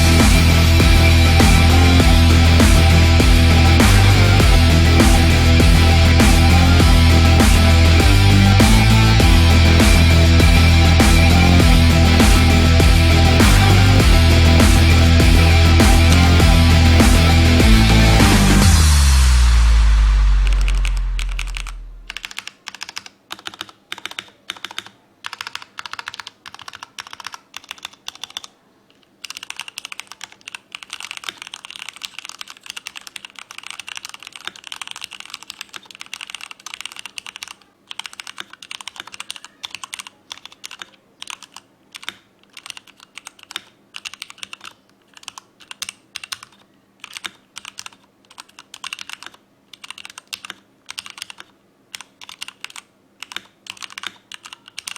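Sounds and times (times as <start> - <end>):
mechanical keyboard typing: 20.5 - 54.9.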